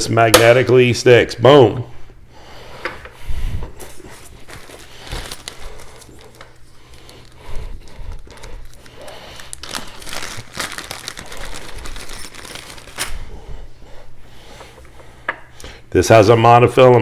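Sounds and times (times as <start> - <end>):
packaging crinkling and rustling: 3.8 - 13.2.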